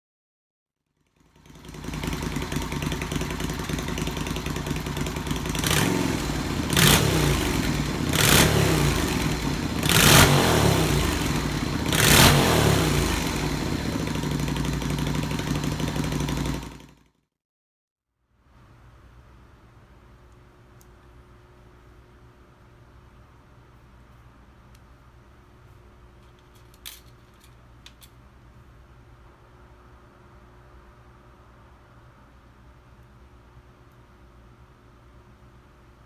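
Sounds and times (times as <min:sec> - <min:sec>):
motorcycle engine idling and revving: 0:01.0 - 0:17.2.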